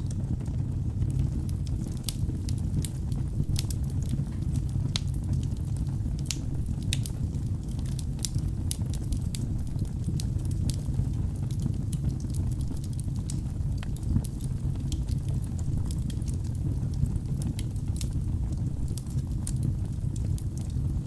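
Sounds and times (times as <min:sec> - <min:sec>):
fire rumbling: 0:00.0 - 0:21.0
wood crackling and popping: 0:00.0 - 0:21.0.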